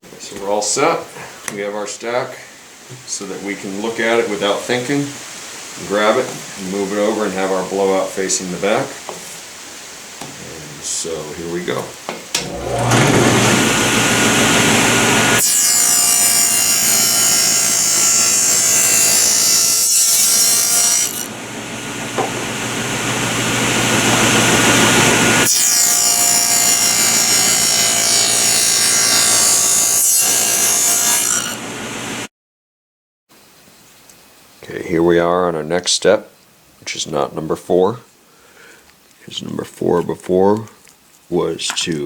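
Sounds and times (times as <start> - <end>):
table saw cutting wood: 12.4 - 32.3.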